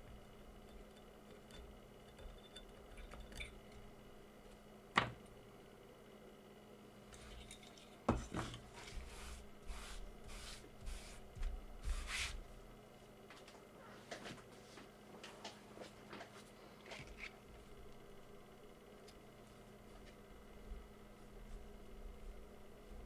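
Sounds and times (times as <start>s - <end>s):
tool scraping strokes: 8.2s - 12.4s.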